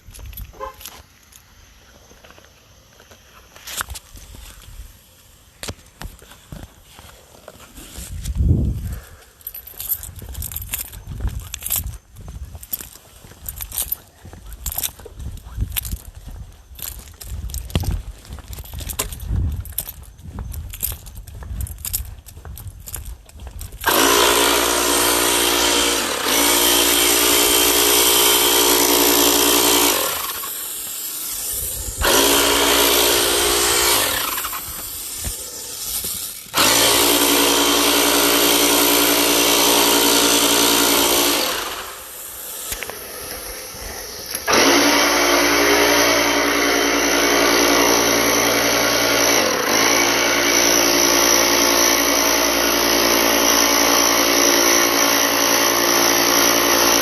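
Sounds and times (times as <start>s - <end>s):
sprayer motor humming: 23.8s - 57.0s
spray hissing: 30.0s - 37.0s, 40.6s - 44.6s.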